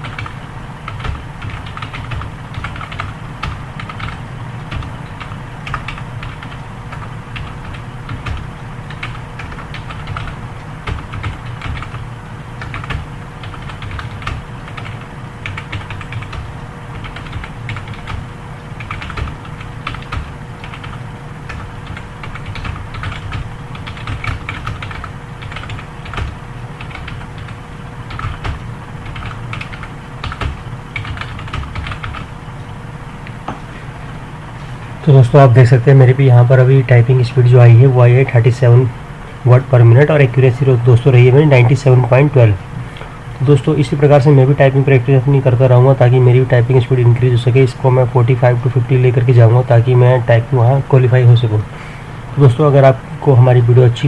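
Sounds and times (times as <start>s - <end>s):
keyboard typing: 0.0s - 18.2s, 18.8s - 32.3s.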